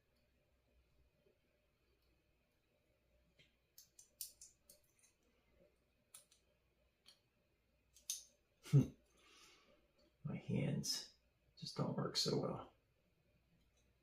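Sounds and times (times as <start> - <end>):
small components clicking: 3.8 - 5.2, 6.1 - 7.2, 7.9 - 8.3.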